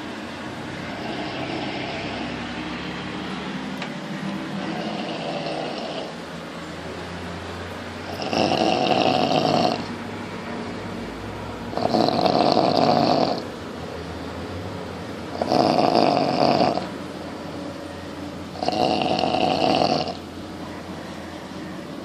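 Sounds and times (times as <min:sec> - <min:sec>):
person snoring: 0:04.8 - 0:06.1, 0:08.1 - 0:09.9, 0:11.8 - 0:13.4, 0:15.4 - 0:16.9, 0:18.6 - 0:20.2.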